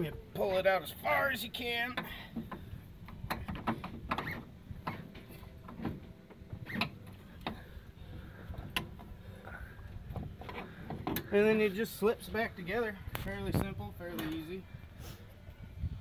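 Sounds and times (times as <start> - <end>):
metal clicks and knocks: 1.9 - 7.7.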